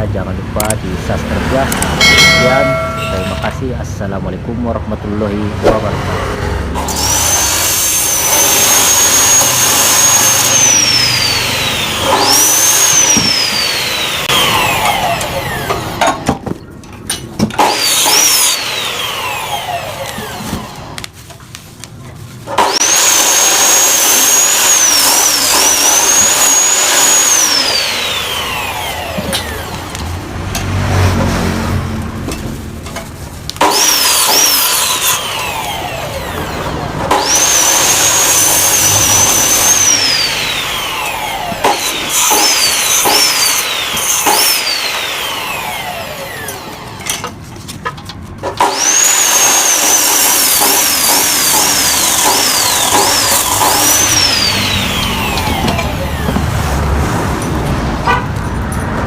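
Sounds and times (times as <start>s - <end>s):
power tool motor whining: 6.8s - 16.3s, 17.6s - 21.0s, 22.5s - 31.3s, 33.6s - 47.3s, 48.6s - 56.6s.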